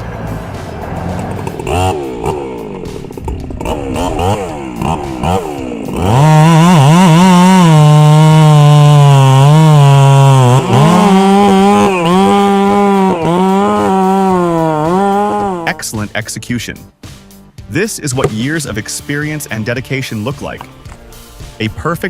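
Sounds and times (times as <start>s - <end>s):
chainsaw engine revving: 0.0s - 15.8s.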